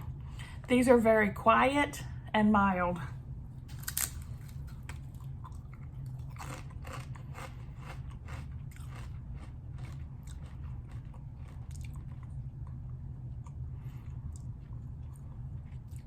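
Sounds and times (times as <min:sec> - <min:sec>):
steady low hum: 0:00.0 - 0:16.0
person crunching potato chips: 0:03.7 - 0:12.3.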